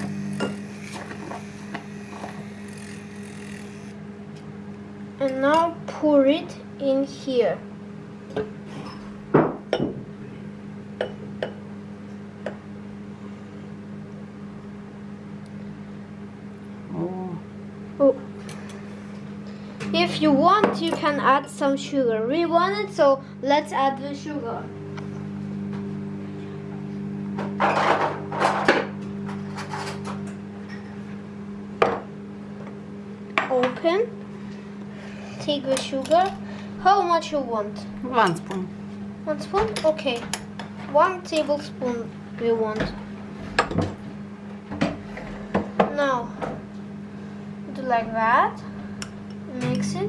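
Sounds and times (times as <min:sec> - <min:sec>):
steady low hum: 0:00.0 - 0:50.0
kitchen items rustling and scraping: 0:27.6 - 0:31.0.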